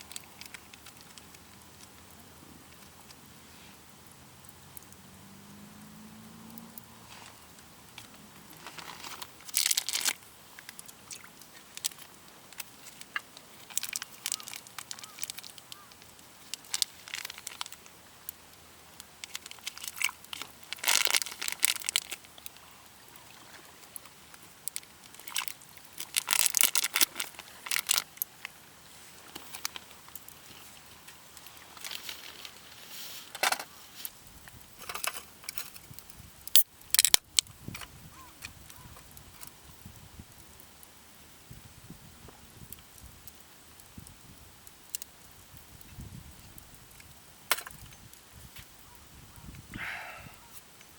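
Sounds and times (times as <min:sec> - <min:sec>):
rustling and crinkling handling noise: 0:07.0 - 0:18.4, 0:19.0 - 0:36.2.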